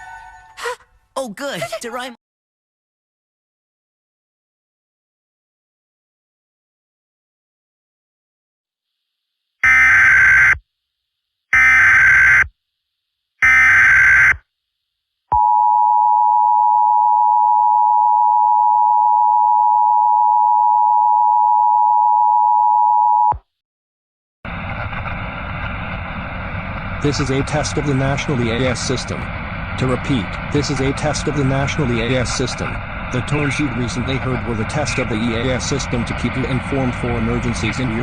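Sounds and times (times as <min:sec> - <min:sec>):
steady rushing noise: 0:24.5 - 0:38.0.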